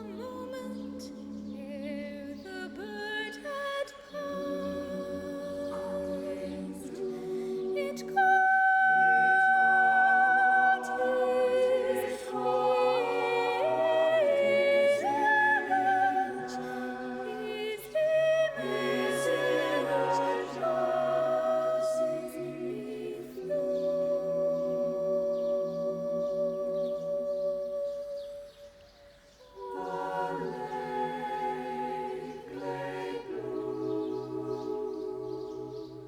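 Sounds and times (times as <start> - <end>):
voices singing held notes: 0.0 - 36.0.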